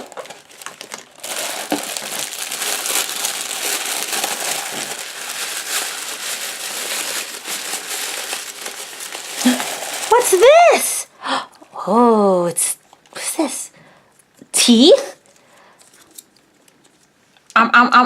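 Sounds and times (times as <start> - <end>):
wrapping crinkling and rustling: 0.0 - 10.9, 15.1 - 17.4.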